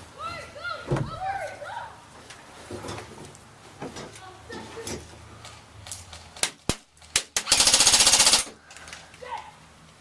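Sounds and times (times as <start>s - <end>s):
airsoft gun full-auto burst: 6.4s - 8.5s.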